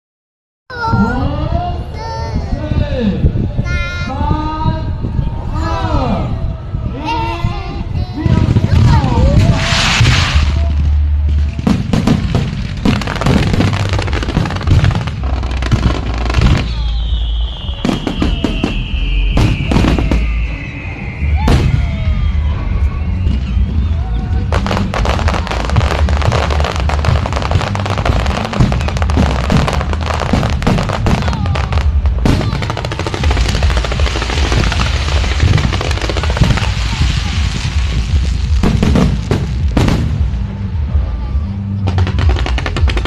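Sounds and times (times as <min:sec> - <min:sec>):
fireworks crackling: 0:08.0 - 0:41.1, 0:41.8 - 0:43.0
fireworks booming: 0:08.2 - 0:41.1, 0:41.7 - 0:43.0
falling firework whistle: 0:09.3 - 0:12.3, 0:15.0 - 0:27.1.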